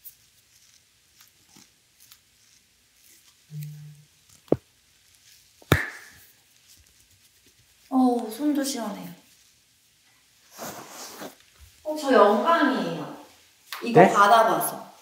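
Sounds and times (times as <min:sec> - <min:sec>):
sharp knocks: 0:05.6 - 0:06.2.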